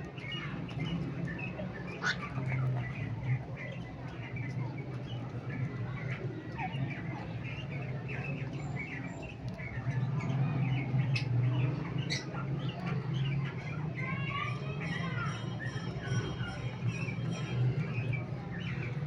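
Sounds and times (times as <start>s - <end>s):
cockatiels chirping: 11.0s - 13.7s.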